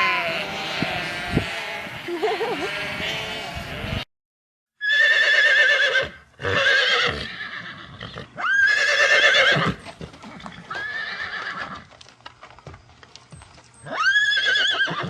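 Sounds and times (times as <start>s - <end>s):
horse whinnying: 4.8s - 11.9s, 13.8s - 15.0s.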